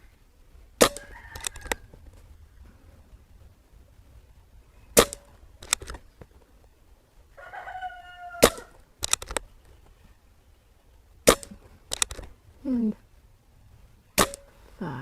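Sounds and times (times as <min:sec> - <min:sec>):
rifle clicks: 0:00.8 - 0:01.8, 0:05.0 - 0:06.1, 0:08.4 - 0:09.5, 0:11.2 - 0:12.3, 0:14.2 - 0:14.5
distant rooster crowing: 0:00.8 - 0:02.1, 0:07.3 - 0:08.9
air rifle shots: 0:05.0 - 0:06.0, 0:08.4 - 0:09.4, 0:11.2 - 0:12.3, 0:14.2 - 0:14.6.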